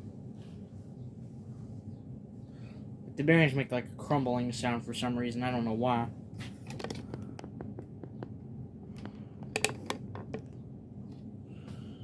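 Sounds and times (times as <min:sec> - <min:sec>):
ceiling fan hum: 0:00.0 - 0:12.0
crackling clicks of fan bearings: 0:06.4 - 0:11.3.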